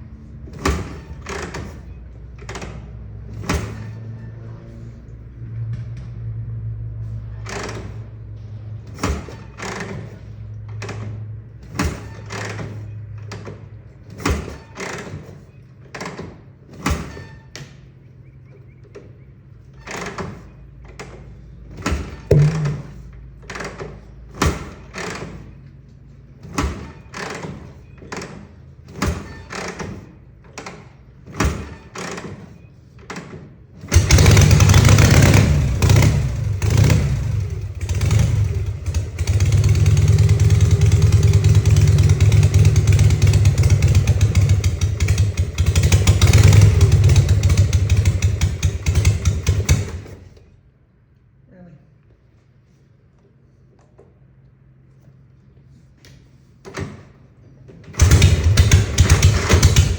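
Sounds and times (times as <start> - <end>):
motorcycle engine knocks and pops: 21.0 - 25.4, 33.9 - 50.3, 56.7 - 59.9
motorcycle engine running unevenly: 22.1 - 23.1, 33.9 - 50.2, 58.0 - 59.9.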